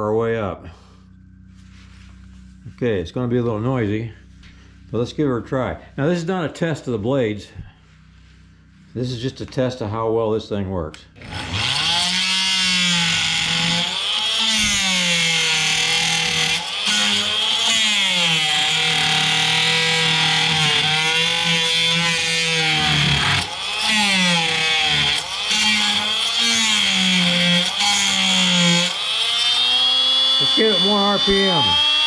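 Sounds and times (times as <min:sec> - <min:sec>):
oscillating multi-tool cutting wood: 0:11.2 - 0:32.0.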